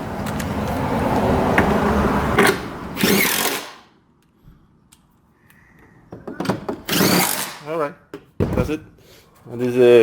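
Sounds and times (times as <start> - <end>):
power drill rattling: 3.0 - 3.8, 6.8 - 7.6.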